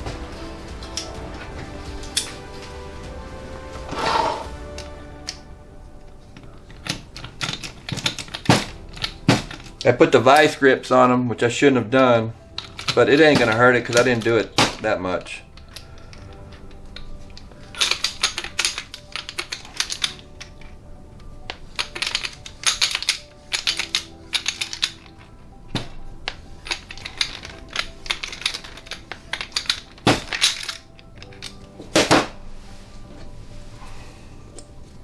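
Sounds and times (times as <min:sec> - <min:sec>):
hand ratchet clicking: 0:21.5 - 0:31.6.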